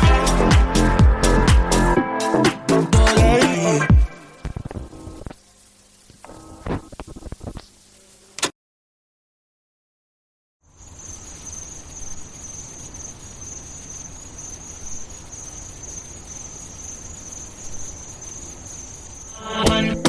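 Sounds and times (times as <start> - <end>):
insect chirring: 3.0 - 8.4, 10.7 - 20.0.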